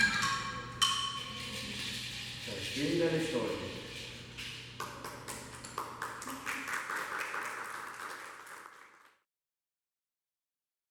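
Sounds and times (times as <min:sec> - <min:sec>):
hands clapping applause: 0:04.8 - 0:09.2.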